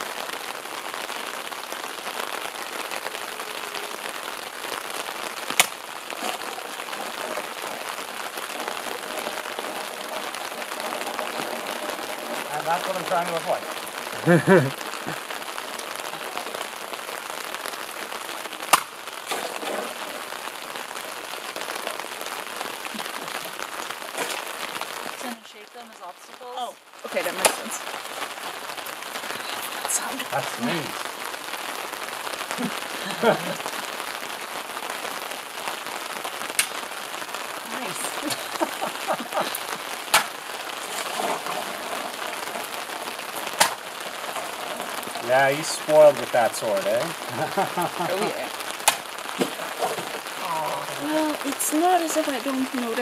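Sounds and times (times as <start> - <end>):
steady rain: 0.0 - 53.0
water splash: 18.6 - 20.5.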